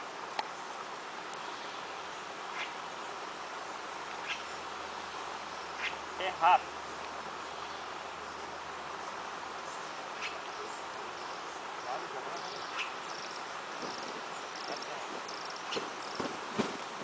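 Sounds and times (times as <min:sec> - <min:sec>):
insect hiss: 0:00.0 - 0:17.0
faint clicks: 0:00.3 - 0:00.5.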